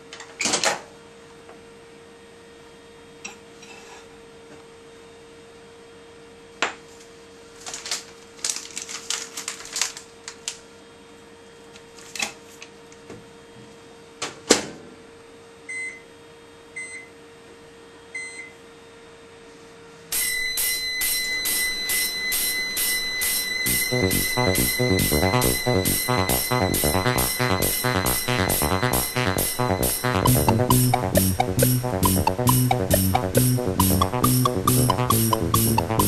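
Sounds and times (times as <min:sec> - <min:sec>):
microwave oven humming: 0:15.1 - 0:30.6
electronic music: 0:20.2 - 0:36.0.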